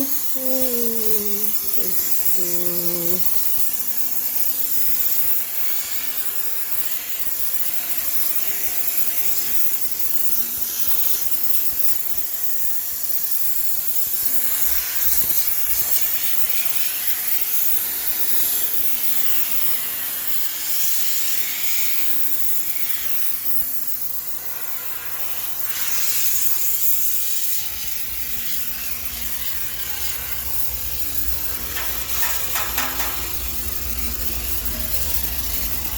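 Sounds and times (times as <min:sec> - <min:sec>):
steam cleaner hissing: 0:00.0 - 0:35.9
low rumble: 0:27.8 - 0:35.9.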